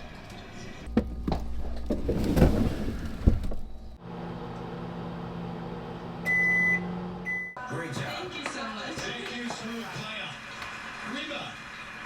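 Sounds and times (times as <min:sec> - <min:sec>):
microwave oven humming: 0:02.6 - 0:07.8.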